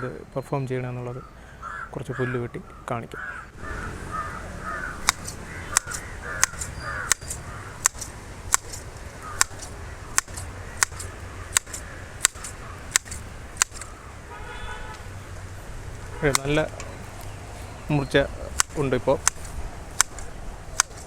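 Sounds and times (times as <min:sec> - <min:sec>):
crows cawing: 0:01.2 - 0:08.1, 0:08.7 - 0:15.2
grass shears snipping: 0:04.1 - 0:14.0, 0:16.2 - 0:17.8, 0:18.4 - 0:21.0.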